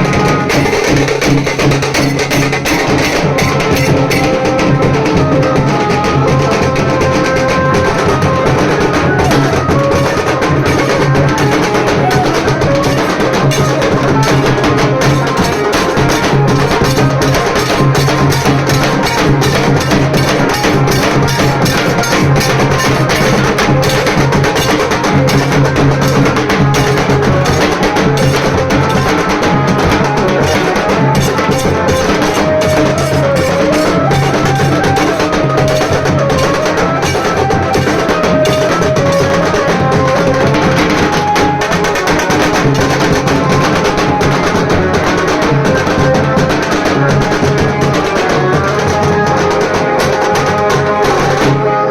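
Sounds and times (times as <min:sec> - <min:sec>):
fast dense drumming: 0:00.0 - 0:51.8.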